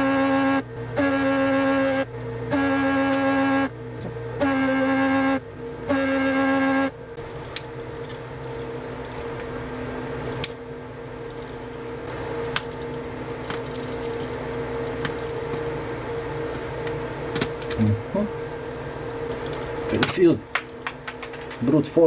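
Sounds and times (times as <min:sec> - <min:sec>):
electrical hum: 0:00.0 - 0:22.0.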